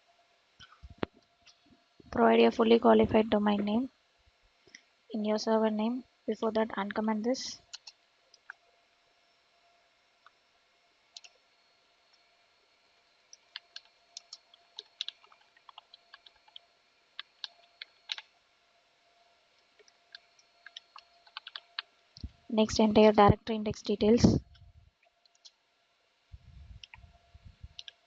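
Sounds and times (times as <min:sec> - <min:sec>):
keyboard keys clicking: 0:13.4 - 0:16.6, 0:17.2 - 0:18.2, 0:19.8 - 0:21.8, 0:27.8 - 0:28.0.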